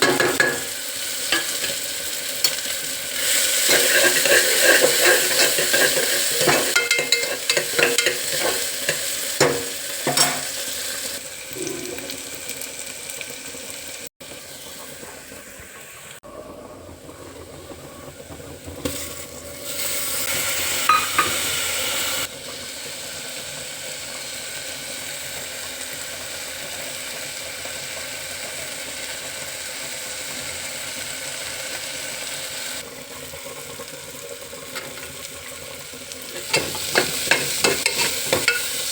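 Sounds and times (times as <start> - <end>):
food sizzling in pan: 0.0 - 16.2, 17.4 - 38.9
spoon knocking against pan: 3.7 - 10.5, 20.9 - 21.4, 36.5 - 38.8.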